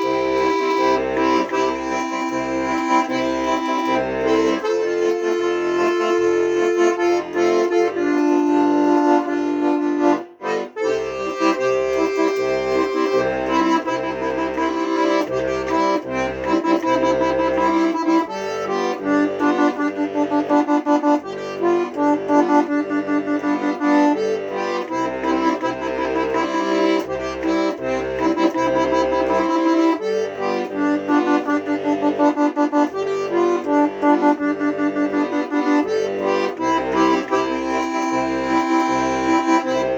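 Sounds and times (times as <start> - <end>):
accordion playing chords: 0.0 - 39.9.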